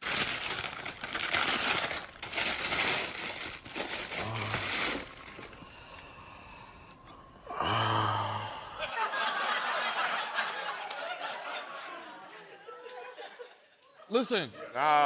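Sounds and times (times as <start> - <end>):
cardboard and paper rustling: 0.1 - 5.6.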